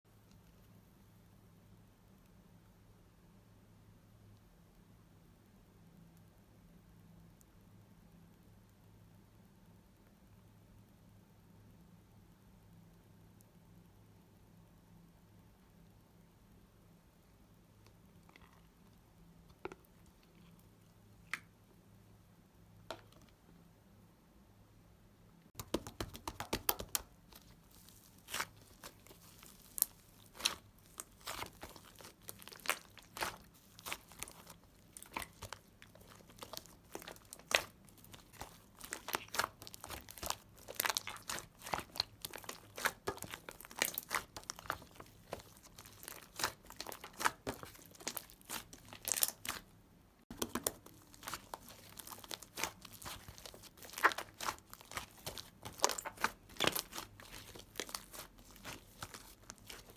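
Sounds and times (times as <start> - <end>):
crunching and crinkling: 25.6 - 49.7, 50.3 - 59.9.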